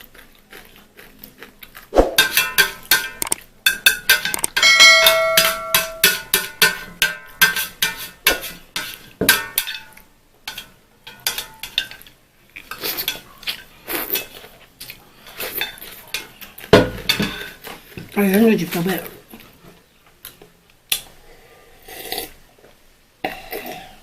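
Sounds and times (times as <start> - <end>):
cutlery clinking on a dish: 2.2 - 18.1.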